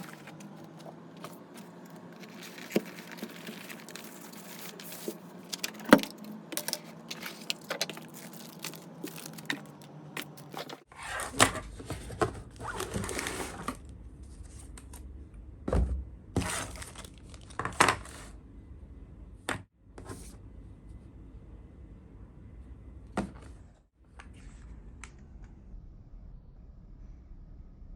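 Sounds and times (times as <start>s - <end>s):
clicks and knocks of handling: 0.0s - 10.8s
packaging rustling and crinkling: 0.0s - 10.8s.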